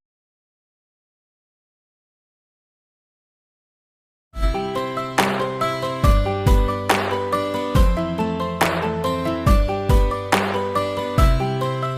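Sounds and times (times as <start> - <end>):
music with drum beat: 5.2 - 11.4.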